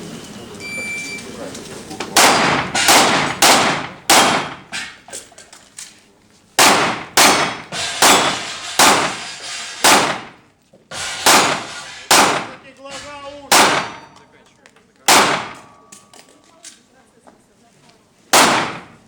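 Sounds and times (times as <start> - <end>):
handgun shots: 2.2 - 5.0, 6.6 - 10.4, 11.2 - 12.6, 13.5 - 14.2, 15.1 - 15.7, 18.4 - 19.0.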